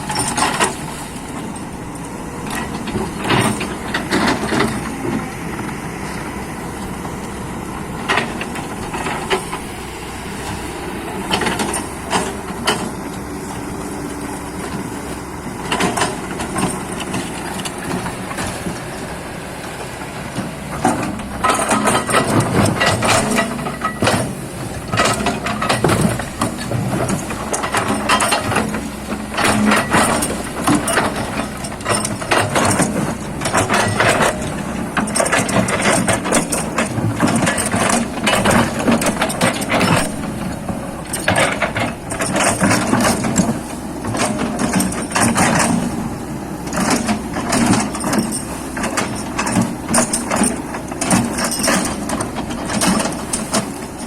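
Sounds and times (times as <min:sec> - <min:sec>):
excavator diesel engine running: 0:00.0 - 0:54.0
metallic clanking and rattling: 0:00.0 - 0:54.0.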